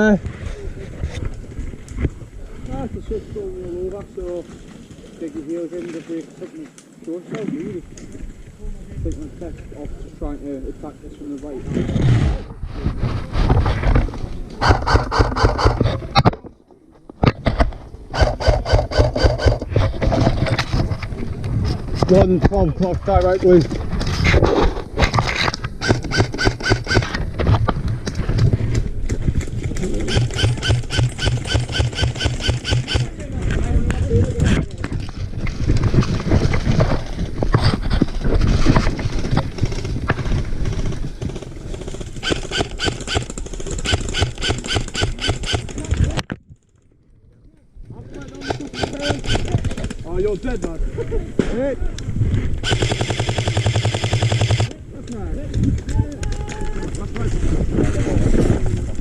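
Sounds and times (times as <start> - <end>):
footsteps: 11.2 - 43.9.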